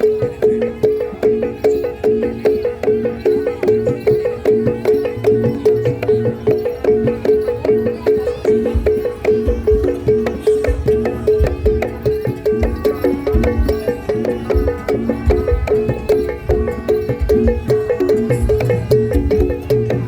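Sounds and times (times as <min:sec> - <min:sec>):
pitched metal percussion: 0:00.0 - 0:20.0.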